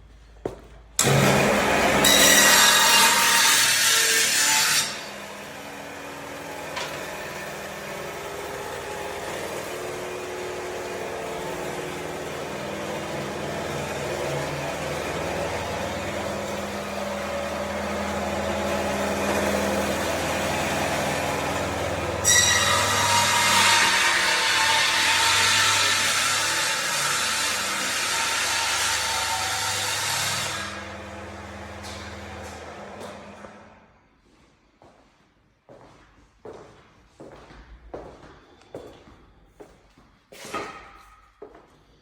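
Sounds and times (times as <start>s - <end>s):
floor sander grinding: 1.0s - 33.9s.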